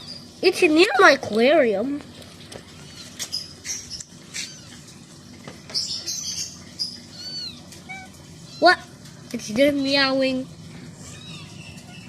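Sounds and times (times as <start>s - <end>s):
kittens mewing: 2.8s - 5.0s, 6.8s - 9.1s, 10.8s - 12.0s.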